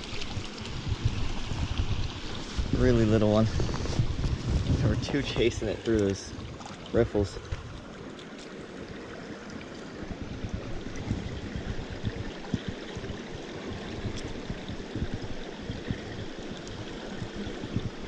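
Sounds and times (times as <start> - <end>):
stream rushing and gurgling: 0.0 - 18.0
low thumps: 10.4 - 18.0.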